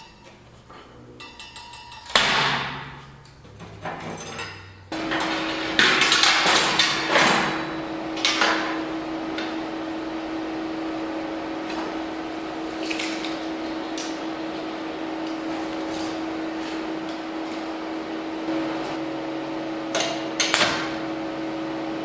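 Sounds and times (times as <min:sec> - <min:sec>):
machine hum: 0:00.0 - 0:22.0.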